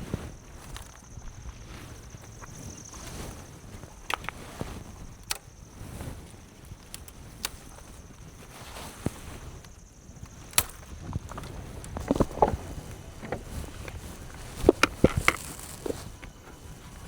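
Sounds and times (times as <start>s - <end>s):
twigs snapping: 10.5s - 16.6s
footsteps on forest litter: 11.4s - 17.0s.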